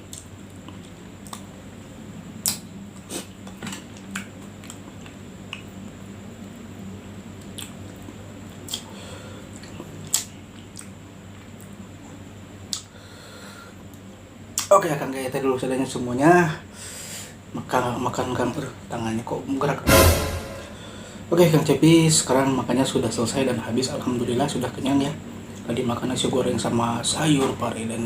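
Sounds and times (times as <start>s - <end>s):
chewing and biting: 7.4s - 8.1s.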